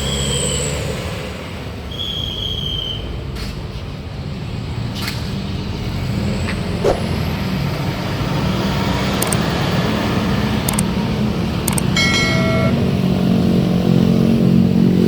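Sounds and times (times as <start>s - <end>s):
road noise: 3.2s - 15.0s
bus engine running: 3.4s - 15.0s
small high clicks: 9.2s - 9.5s.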